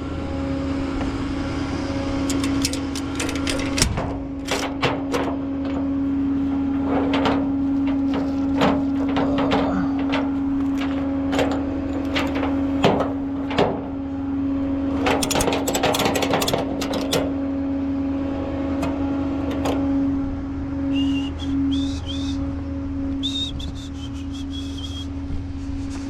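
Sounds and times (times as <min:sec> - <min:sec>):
truck engine hum: 0:00.0 - 0:26.0
metallic clicks and knocks: 0:02.3 - 0:14.0, 0:14.9 - 0:17.4, 0:18.7 - 0:19.9.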